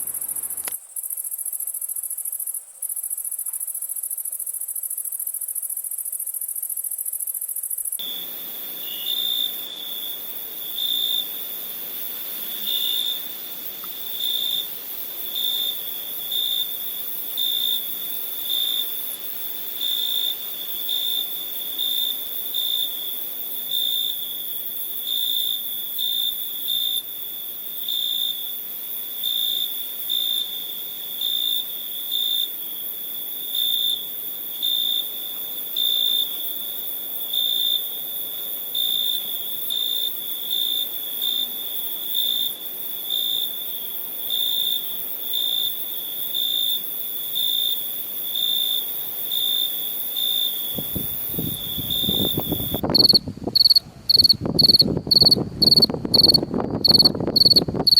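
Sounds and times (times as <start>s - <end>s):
faint high hiss: 0.0s - 18.3s
crickets chirping: 0.0s - 57.9s.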